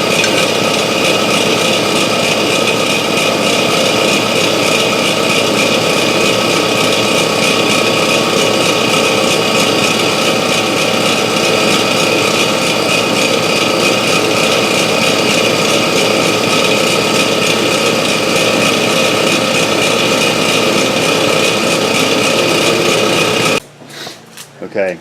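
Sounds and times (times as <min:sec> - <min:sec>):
small engine running: 0:00.0 - 0:23.6.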